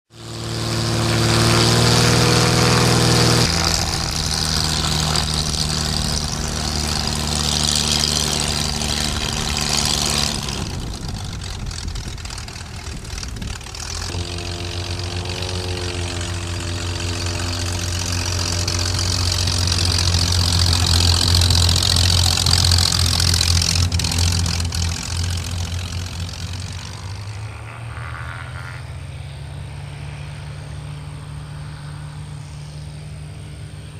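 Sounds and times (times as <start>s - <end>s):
light plane engine and propeller: 0.1s - 33.9s
wind rush: 0.7s - 14.2s.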